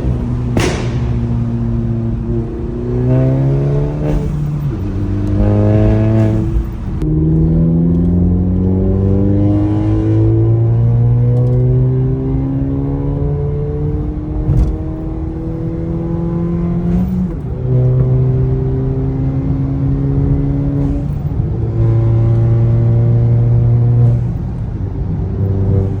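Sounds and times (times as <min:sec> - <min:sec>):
car engine accelerating: 0:00.0 - 0:26.0
gear shift click: 0:01.7 - 0:08.8, 0:11.2 - 0:11.9, 0:13.9 - 0:15.6.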